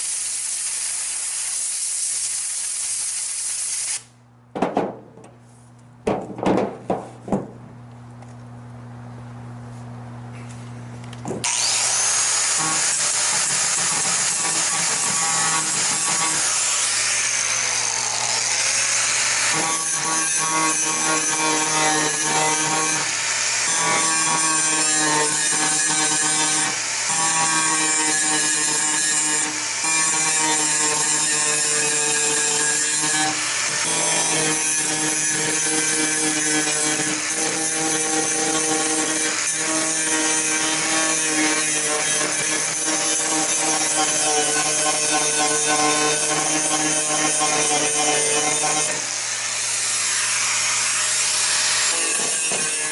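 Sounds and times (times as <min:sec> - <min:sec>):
grinder running on metal: 0:11.4 - 0:52.9.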